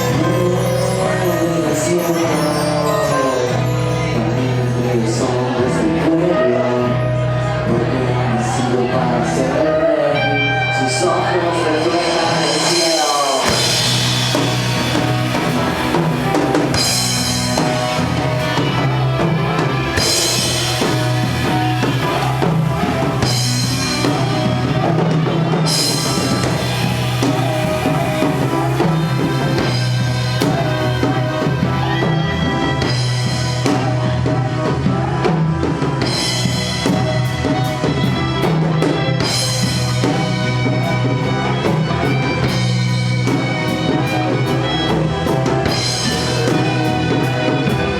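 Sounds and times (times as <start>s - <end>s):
bass line: 0.0s - 47.9s
drum kit with cymbal crashes: 11.8s - 47.9s.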